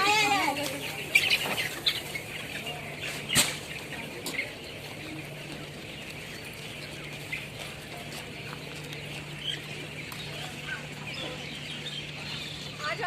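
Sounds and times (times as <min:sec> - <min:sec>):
chickens chirping and clucking: 0:00.0 - 0:13.0
steady low hum: 0:00.0 - 0:13.0.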